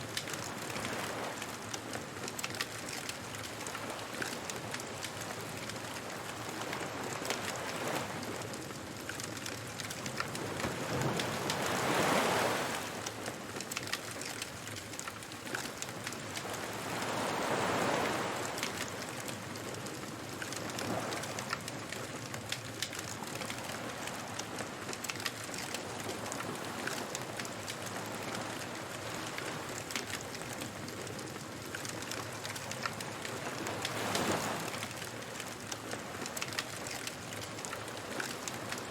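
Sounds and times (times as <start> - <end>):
waves washing ashore: 0.0 - 38.9
wood fire crackling: 0.1 - 7.0, 7.6 - 17.6, 18.5 - 28.4, 29.0 - 38.9.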